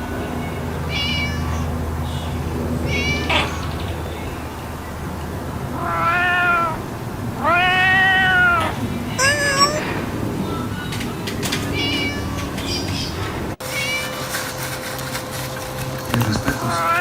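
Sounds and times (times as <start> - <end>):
cat meowing: 0.9 - 1.6, 5.8 - 6.8, 7.4 - 9.9, 11.8 - 12.4.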